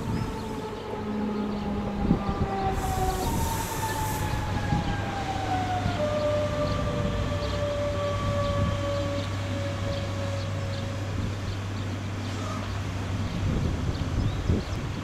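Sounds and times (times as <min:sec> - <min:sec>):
electric train whine: 0:00.0 - 0:12.2.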